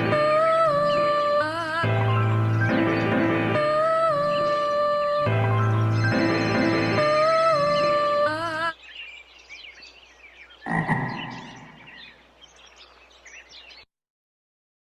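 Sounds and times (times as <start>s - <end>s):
high chirping animal calls: 4.2s - 13.9s.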